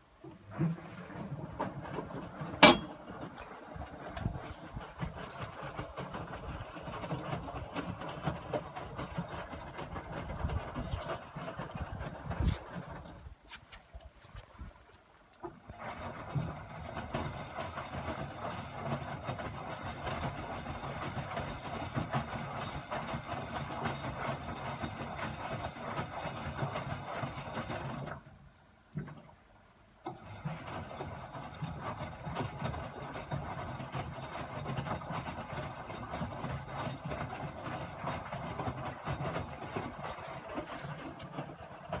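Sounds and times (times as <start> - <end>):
washing machine drum churning: 0.5 - 6.6.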